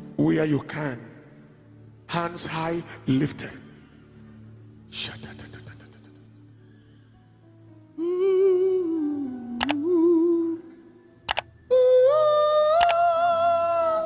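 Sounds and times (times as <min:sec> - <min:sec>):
person humming a slow melody: 0:07.9 - 0:14.0
sharp clicks: 0:12.8 - 0:13.0.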